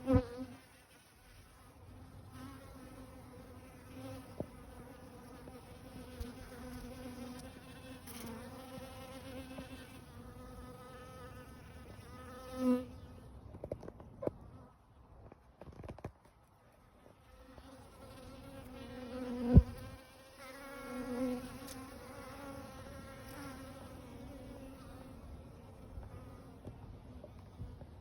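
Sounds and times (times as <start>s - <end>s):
bees buzzing in flight: 17.4s - 26.5s.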